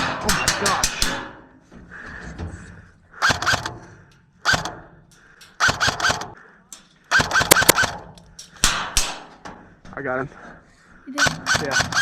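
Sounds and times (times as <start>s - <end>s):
airsoft gun firing in bursts: 5.6s - 6.4s, 7.1s - 8.0s.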